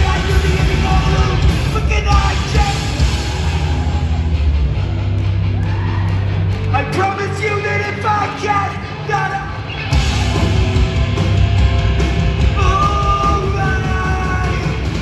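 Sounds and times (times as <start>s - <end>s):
hardcore band playing live: 0.0s - 15.0s
heavy drums and bass: 0.0s - 15.0s.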